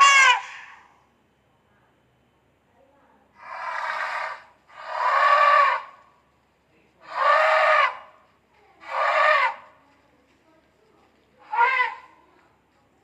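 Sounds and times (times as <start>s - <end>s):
elephant trumpeting: 0.0s - 0.8s, 3.4s - 6.0s, 7.0s - 8.1s, 8.8s - 9.7s, 11.4s - 12.2s.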